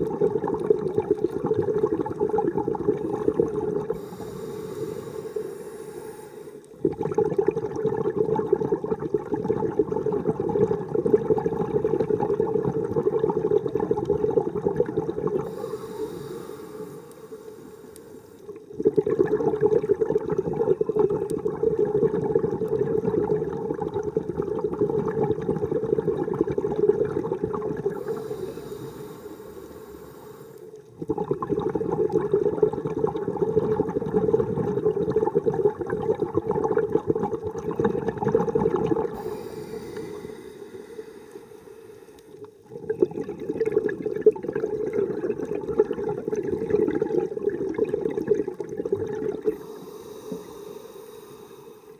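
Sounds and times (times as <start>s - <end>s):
gurgling exhaled bubbles: 0.0s - 51.9s
regulator hiss on inhale: 3.9s - 6.8s, 15.4s - 18.6s, 27.9s - 30.8s, 39.1s - 42.5s, 49.4s - 51.9s.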